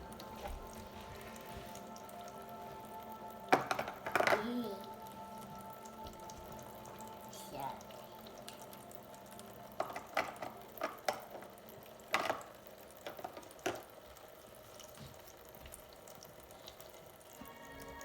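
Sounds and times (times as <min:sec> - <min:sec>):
plastic toy pieces knocking: 0:03.5 - 0:04.4, 0:09.8 - 0:11.4, 0:12.1 - 0:13.9.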